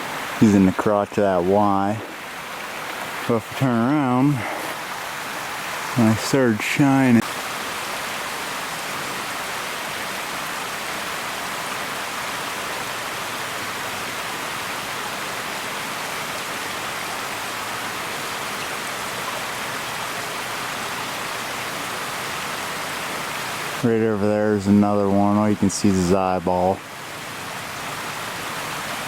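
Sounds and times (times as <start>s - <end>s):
steady even hiss: 0.0s - 13.7s.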